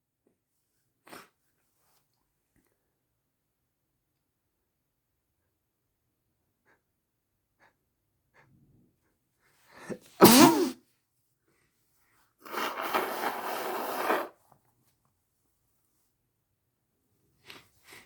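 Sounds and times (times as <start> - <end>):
person sneezing: 9.8 - 10.8.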